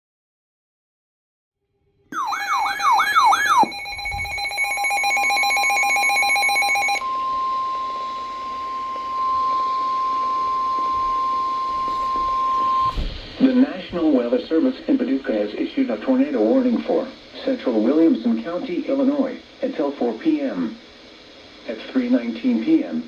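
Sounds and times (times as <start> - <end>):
steady alert tone: 2.2 - 7.0
warbling electronic tone: 2.2 - 7.0.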